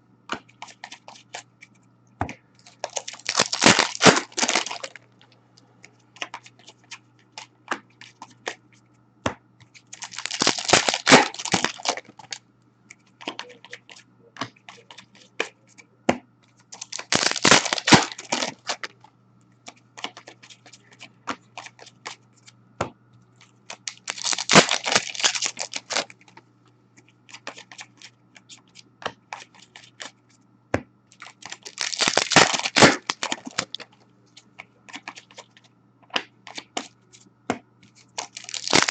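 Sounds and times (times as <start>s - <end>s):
cards clicking and rustling: 0.3s - 1.8s, 2.6s - 5.1s, 5.8s - 8.8s, 9.6s - 12.4s, 16.6s - 19.0s, 19.7s - 22.6s, 23.4s - 26.4s, 27.0s - 30.2s, 31.1s - 38.9s
card pack wrappers ripping: 2.7s - 5.0s, 9.9s - 12.4s, 16.8s - 18.9s, 23.7s - 26.1s, 31.2s - 33.8s, 38.2s - 38.9s.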